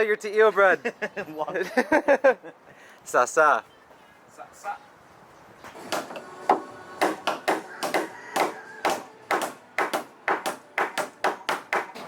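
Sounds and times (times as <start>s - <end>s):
machetes hacking bamboo: 7.0s - 12.0s.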